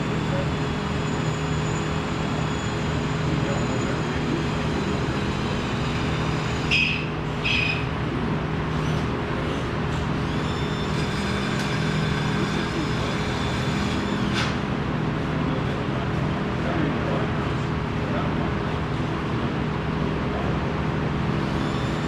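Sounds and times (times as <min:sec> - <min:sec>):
short high-pitched squeals: 0:00.0 - 0:08.0, 0:10.2 - 0:14.6, 0:21.5 - 0:22.0
machine hum: 0:00.0 - 0:22.0.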